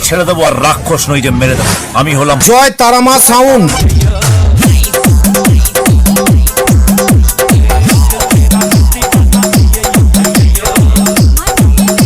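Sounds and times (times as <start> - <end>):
electronic dance music: 0.0 - 12.0
heavy bass kick: 3.7 - 12.0.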